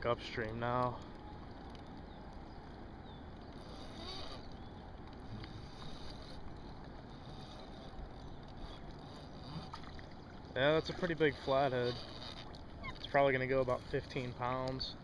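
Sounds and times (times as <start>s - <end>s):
river water flowing: 0.0s - 15.0s
wind: 0.0s - 15.0s.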